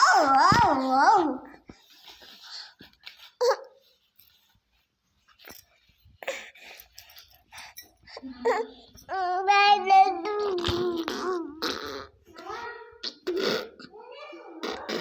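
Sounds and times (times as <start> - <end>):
small child vocalizing: 0.0 - 1.6, 8.4 - 15.0.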